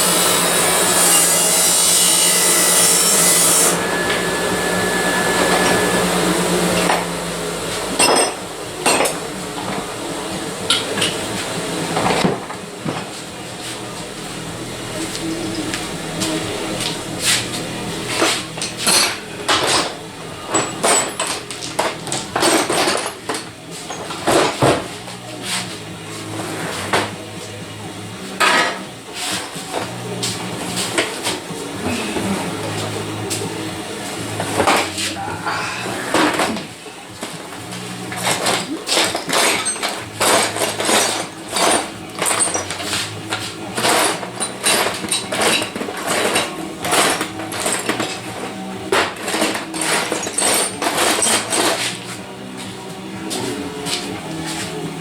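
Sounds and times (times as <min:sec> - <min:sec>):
low motor hum: 0:03.7 - 0:24.2.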